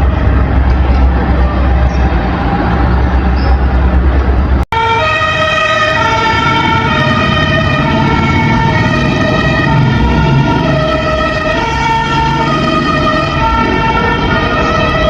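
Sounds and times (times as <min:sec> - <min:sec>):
vehicle engine rumble: 0:00.0 - 0:04.8
fire truck two-tone siren: 0:04.7 - 0:15.0.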